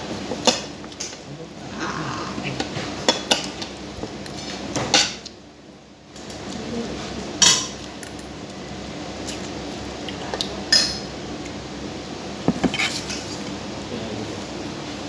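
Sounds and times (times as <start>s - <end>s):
cutlery clinking against plates: 2.6s - 5.4s, 7.4s - 8.4s, 10.3s - 11.1s.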